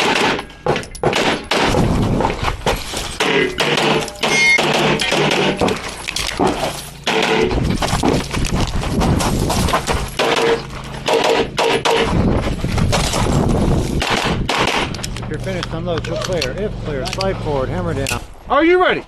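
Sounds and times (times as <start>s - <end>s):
pistol shots: 0.0s - 2.2s, 3.2s - 7.6s, 10.2s - 12.1s, 14.0s - 15.2s.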